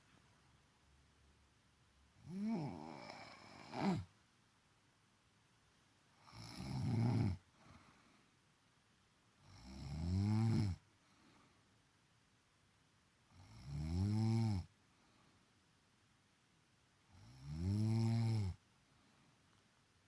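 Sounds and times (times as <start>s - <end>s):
woman snoring: 2.2s - 4.1s, 6.2s - 7.8s, 9.4s - 10.8s, 13.3s - 14.7s, 17.1s - 18.6s
faint breath out: 7.5s - 8.4s, 10.9s - 11.8s.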